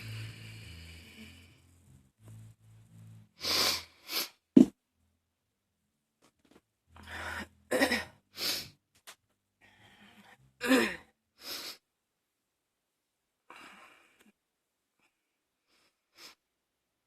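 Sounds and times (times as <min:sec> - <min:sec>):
faint wheezy breath: 0:00.0 - 0:01.8
woman coughing: 0:07.7 - 0:08.2.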